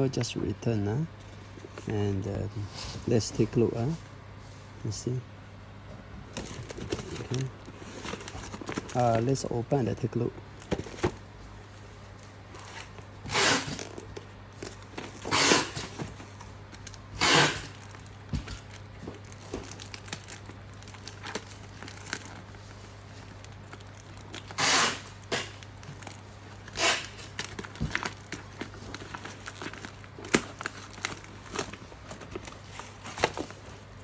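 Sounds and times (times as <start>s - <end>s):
packaging crinkling: 6.3s - 9.5s, 10.4s - 34.0s
packaging being torn: 6.4s - 9.3s, 12.8s - 33.7s.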